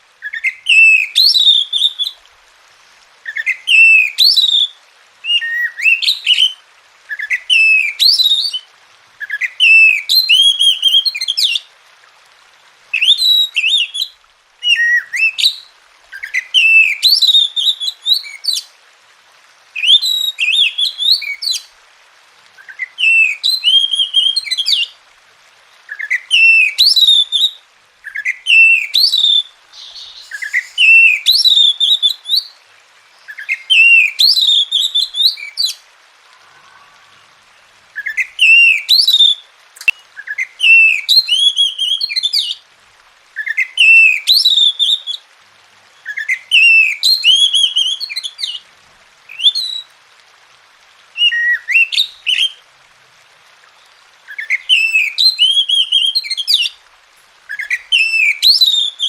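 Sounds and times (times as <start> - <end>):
bird singing rising phrases: 28.7 - 32.6, 35.6 - 40.0.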